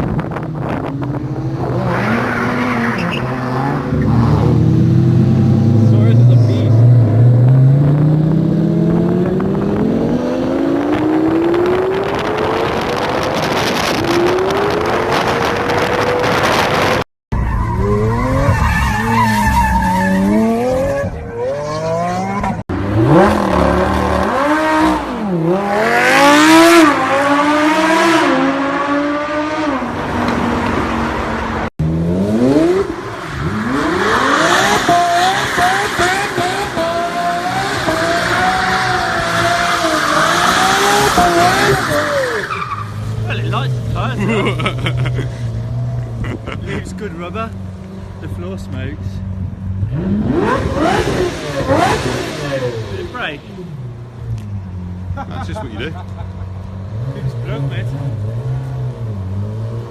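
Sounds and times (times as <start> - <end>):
car engine revving: 0.0 - 17.1, 17.7 - 59.9
tyre squeal: 1.9 - 3.9, 17.4 - 21.4.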